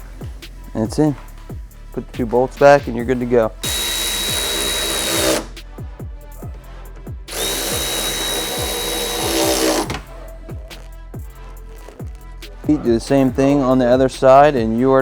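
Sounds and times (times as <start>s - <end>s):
cordless drill whining: 3.6s - 5.6s, 7.3s - 10.2s.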